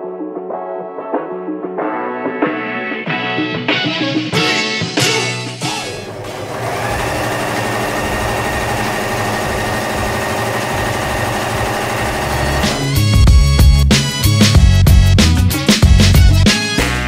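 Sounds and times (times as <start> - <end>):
sewing machine running: 6.0 - 13.5.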